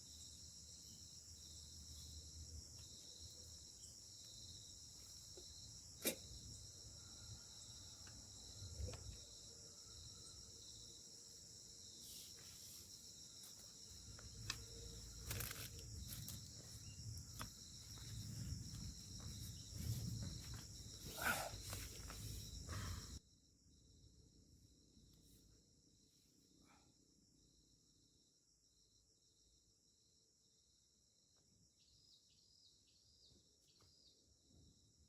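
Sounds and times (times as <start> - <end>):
insects trilling: 0.0 - 26.1.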